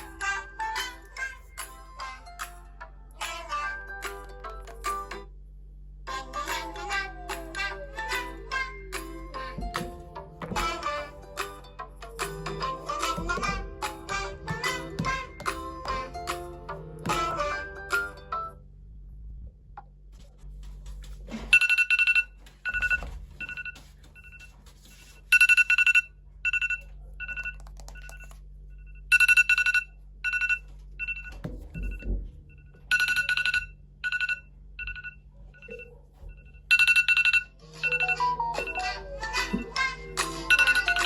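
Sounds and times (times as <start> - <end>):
electronic ringtone beeps: 21.6 - 24.4, 25.3 - 28.3, 29.1 - 32.1, 32.9 - 35.9, 36.7 - 41.0.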